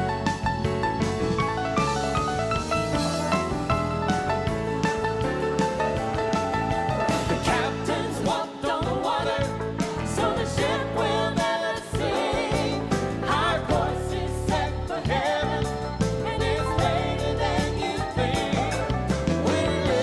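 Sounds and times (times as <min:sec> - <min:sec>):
gospel choir singing with band: 0:07.1 - 0:20.0.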